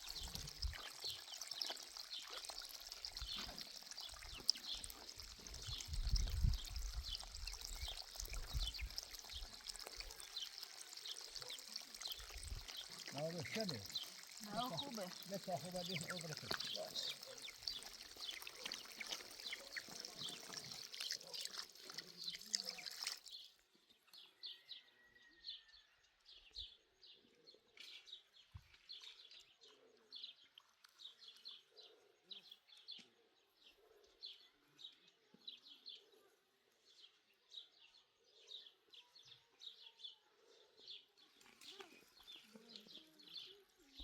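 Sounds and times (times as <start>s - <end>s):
water running: 0.0s - 23.4s
small birds chirping: 0.0s - 25.2s, 26.4s - 44.0s.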